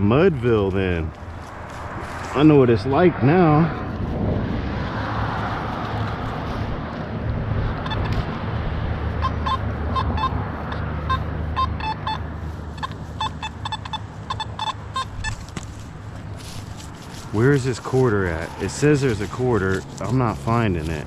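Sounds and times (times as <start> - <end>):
low traffic rumble: 0.0 - 21.0
metal detector beeps: 7.8 - 8.2, 9.2 - 15.5.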